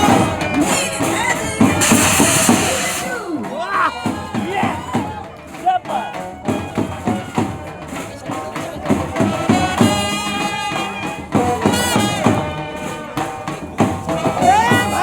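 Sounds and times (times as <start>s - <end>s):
music with steady beat: 0.0s - 15.0s.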